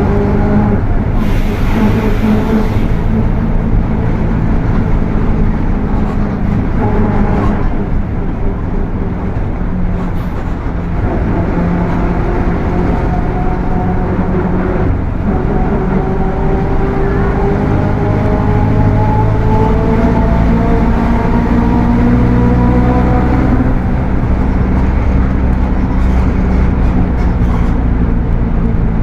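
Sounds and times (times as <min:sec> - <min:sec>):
bus diesel engine running: 0:00.0 - 0:29.0
steady tones climbing in pitch: 0:11.0 - 0:26.0.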